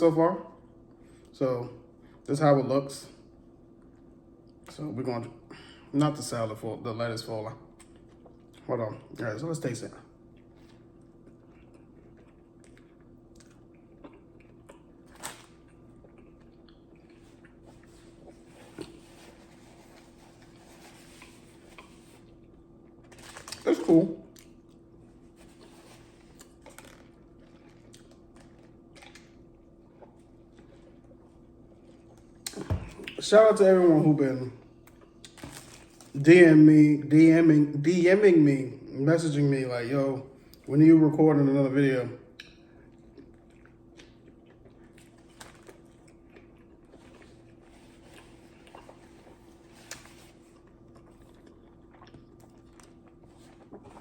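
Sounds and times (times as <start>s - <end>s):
low room hum: 0.0s - 54.0s
mouth chewing sounds: 10.2s - 19.2s, 42.3s - 54.0s
crunchy crackles: 25.9s - 29.4s.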